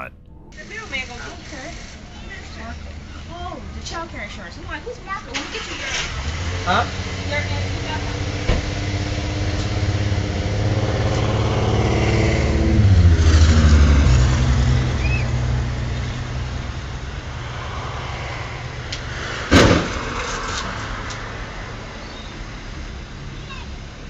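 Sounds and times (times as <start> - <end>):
car engine running: 0.0 - 23.3
sharp bang: 17.2 - 21.4.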